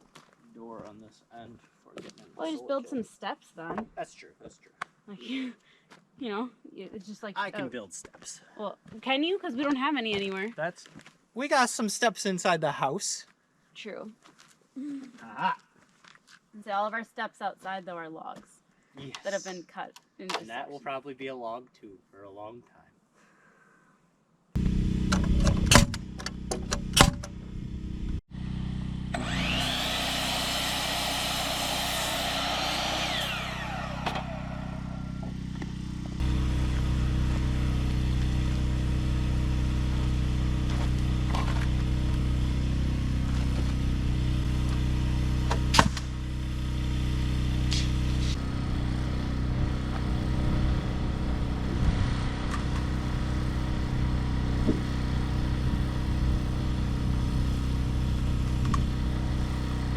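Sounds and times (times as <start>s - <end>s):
sawmill engine running: 24.6s - 59.9s
saw blade whining through log: 29.1s - 37.2s, 44.5s - 46.2s.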